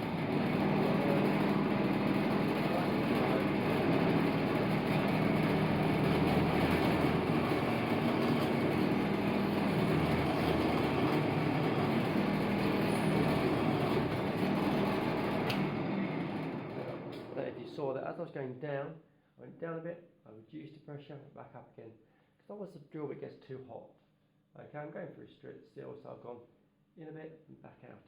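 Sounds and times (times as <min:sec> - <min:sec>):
pillar drill drilling steel: 0:00.0 - 0:17.2.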